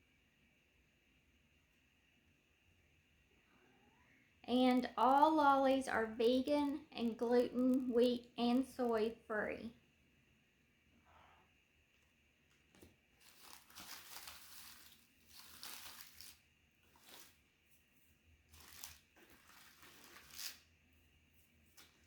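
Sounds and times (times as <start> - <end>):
packaging crinkling and rustling: 12.5 - 17.6, 18.5 - 20.7.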